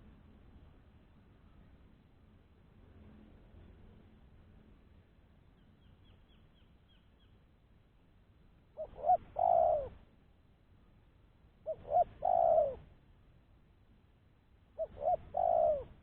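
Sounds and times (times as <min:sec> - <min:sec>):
dove cooing: 0:08.8 - 0:10.0, 0:11.6 - 0:12.9, 0:14.8 - 0:16.0.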